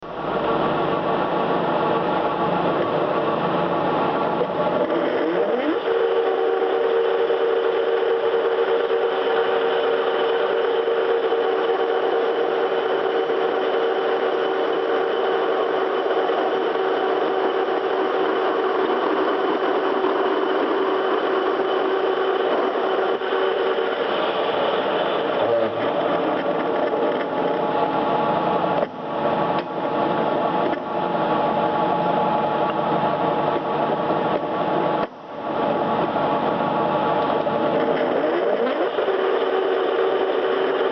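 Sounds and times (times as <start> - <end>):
workshop machine motor humming: 0.0 - 40.9
grinding noise: 4.4 - 28.0.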